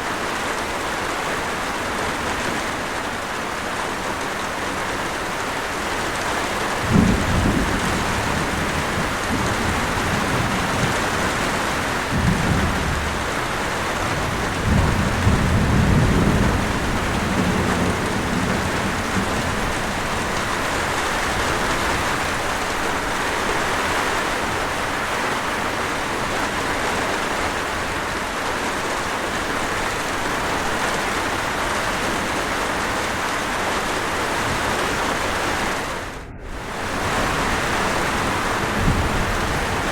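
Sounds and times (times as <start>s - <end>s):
rain falling: 0.0s - 39.9s
waterfall rushing: 15.3s - 39.9s.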